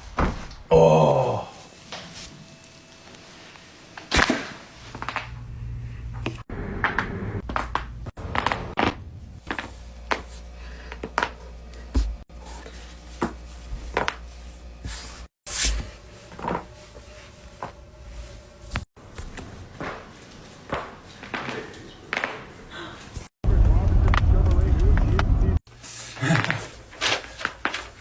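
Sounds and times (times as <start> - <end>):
low hum: 4.8 - 12.2, 23.4 - 25.6.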